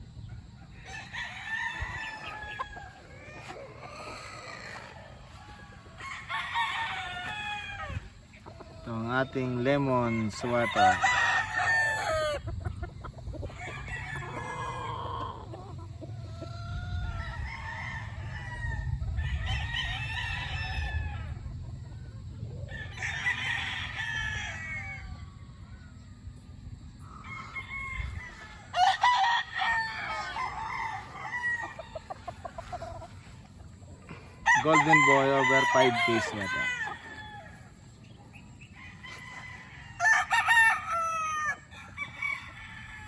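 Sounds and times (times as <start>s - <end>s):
roosters crowing: 0.0s - 43.0s.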